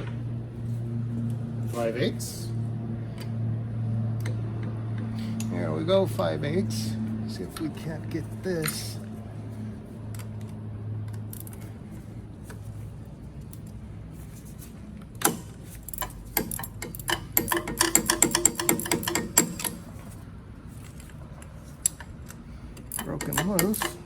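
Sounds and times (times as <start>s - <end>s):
metallic clank: 15.2s - 20.0s
ratchet wrench clicking: 15.2s - 20.0s, 21.8s - 24.0s.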